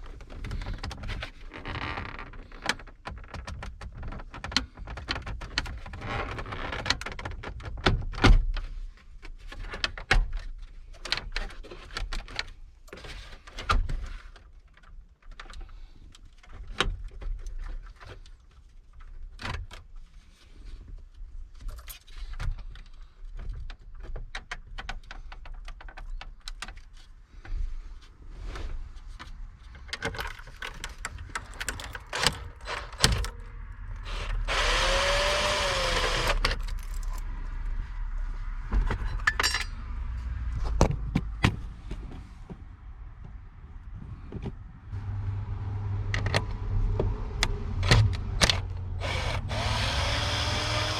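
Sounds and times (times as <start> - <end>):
clicks and knocks handling parts: 6.8 - 33.5, 34.2 - 37.6, 38.7 - 39.8.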